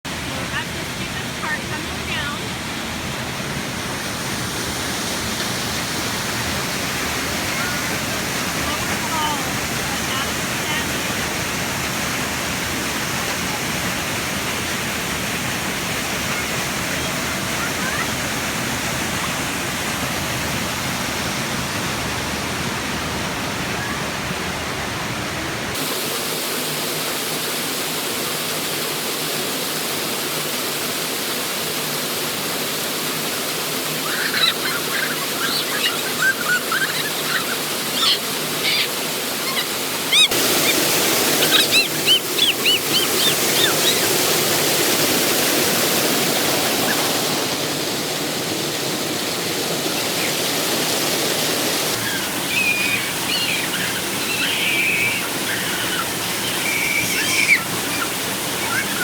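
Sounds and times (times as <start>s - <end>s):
waterfall rushing: 0.0s - 59.0s
high chirping calls: 34.0s - 45.0s, 51.8s - 59.0s.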